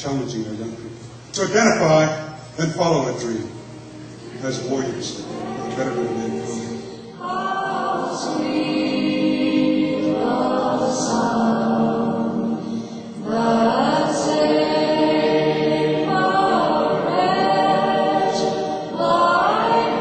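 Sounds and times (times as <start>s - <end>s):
choir chanting long notes: 4.2s - 20.0s
singers breathing: 6.8s - 7.2s, 12.4s - 13.2s.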